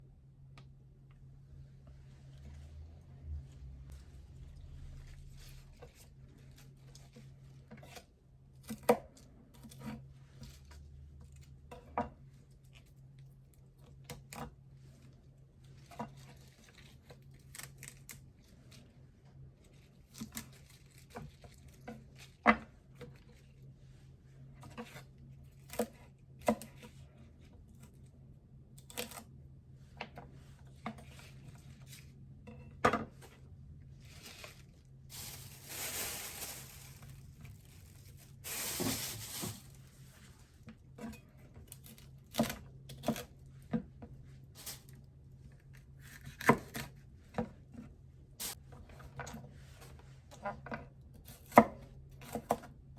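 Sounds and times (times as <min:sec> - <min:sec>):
tearing rustles: 0:34.0 - 0:39.9.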